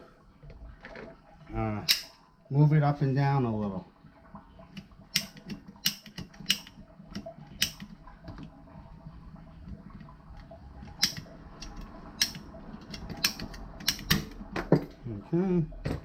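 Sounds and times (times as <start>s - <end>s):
low steady hum: 0.0s - 16.0s
plastic pipe fittings clicking: 4.7s - 8.5s, 9.7s - 14.9s.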